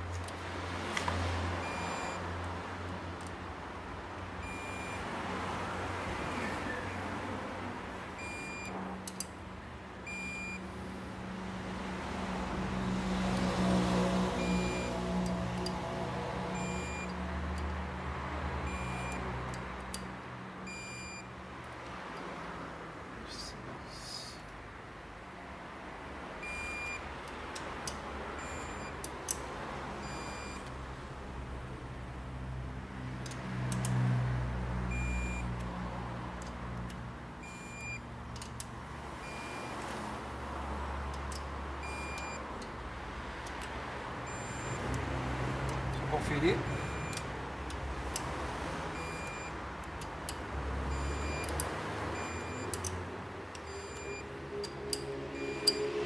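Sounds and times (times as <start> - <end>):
short electronic beeps: 1.6 - 2.2, 4.4 - 5.0, 8.2 - 8.8, 10.1 - 10.6, 14.4 - 15.0, 16.6 - 17.1, 18.7 - 19.2, 20.7 - 21.3, 26.4 - 27.0, 28.4 - 29.0, 30.0 - 30.6, 34.9 - 35.5, 37.4 - 38.0, 39.2 - 39.8, 41.8 - 42.4, 44.3 - 44.9, 46.6 - 47.2, 49.0 - 49.5, 50.9 - 51.6, 52.2 - 52.8, 53.7 - 54.7, 55.4 - 55.9
torque wrench beeping: 1.6 - 2.2, 4.4 - 5.0, 18.7 - 19.2, 41.8 - 42.4, 44.2 - 45.0, 46.7 - 47.3, 52.2 - 53.0, 53.6 - 55.9.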